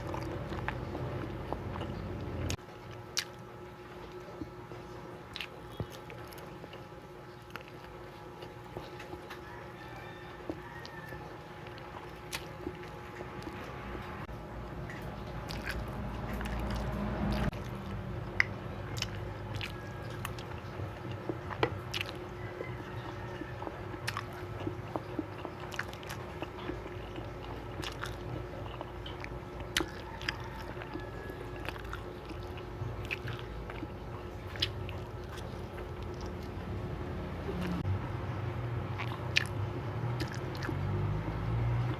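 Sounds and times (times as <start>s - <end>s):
biting and chewing: 0.0s - 37.9s, 38.9s - 41.9s
low rumble: 13.6s - 19.1s.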